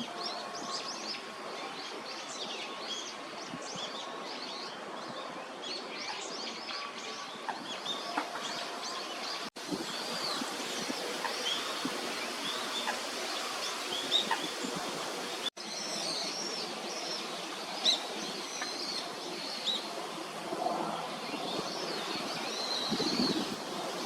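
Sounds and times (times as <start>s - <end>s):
steady background noise: 0.0s - 24.0s
birds chirping: 5.7s - 20.0s, 20.6s - 24.0s.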